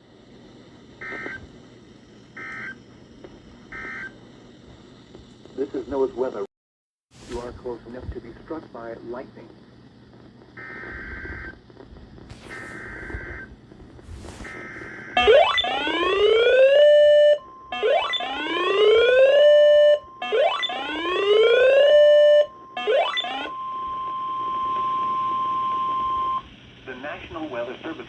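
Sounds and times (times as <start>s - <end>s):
steady warning alarm tone: 2.4s - 2.8s, 3.7s - 4.2s, 12.5s - 13.5s, 14.4s - 26.5s.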